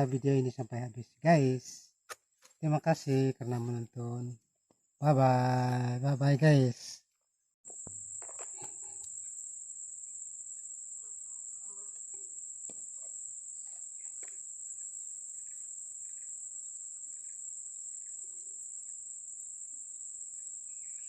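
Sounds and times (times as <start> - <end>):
high-pitched insect drone: 7.7 - 21.0.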